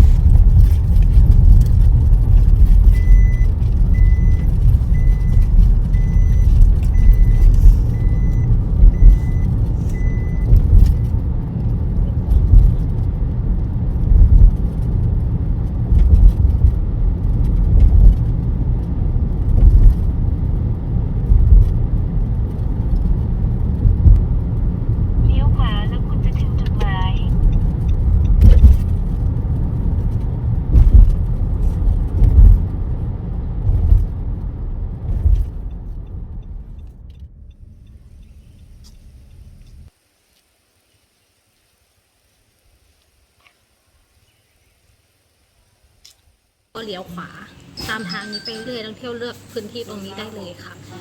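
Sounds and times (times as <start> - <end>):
car engine and road noise: 0.0 - 51.0
short high electronic beeps: 47.8 - 49.0.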